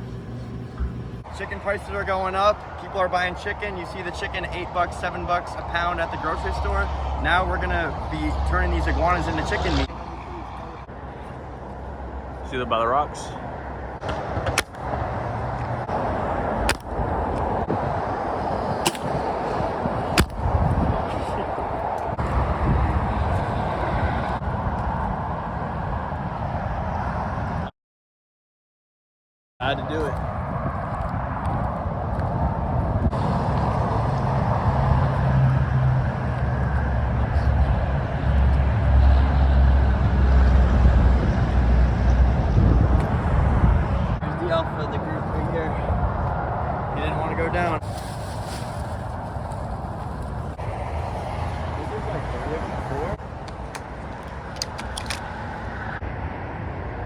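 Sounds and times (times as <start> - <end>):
vehicle engine rumbling: 0.0 - 27.1, 29.6 - 57.0
air rifle shots: 18.8 - 19.2.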